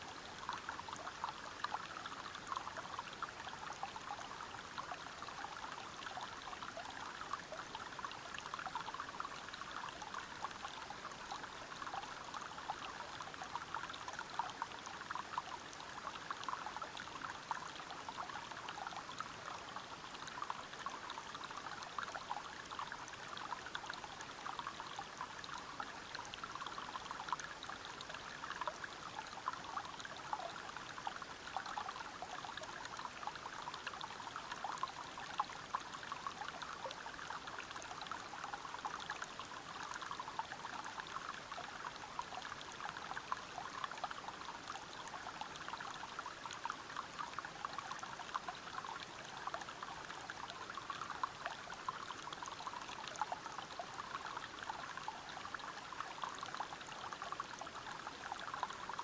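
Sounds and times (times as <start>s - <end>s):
water flowing over rocks: 0.0s - 59.0s.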